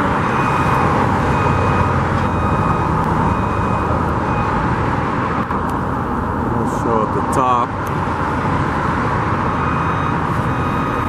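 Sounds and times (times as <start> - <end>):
road traffic noise: 0.0 - 11.0
faint high beep: 9.6 - 11.0.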